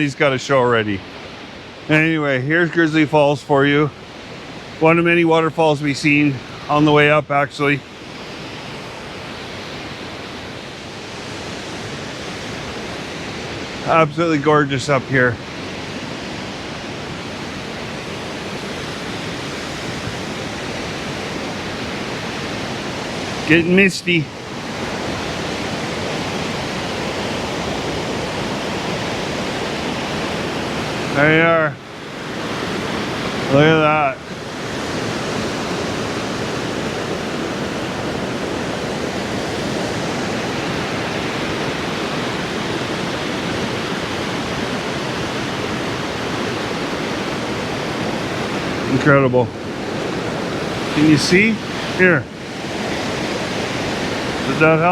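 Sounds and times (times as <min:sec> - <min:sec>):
waterfall rushing: 0:00.0 - 0:54.9.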